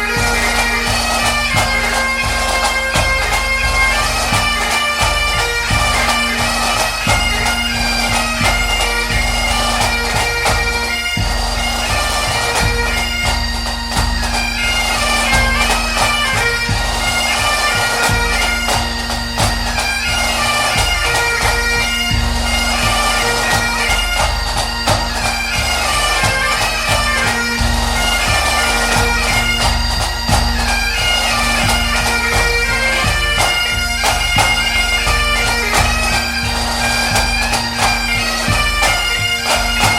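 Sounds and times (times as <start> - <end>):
bagpipe music: 0.0 - 39.9.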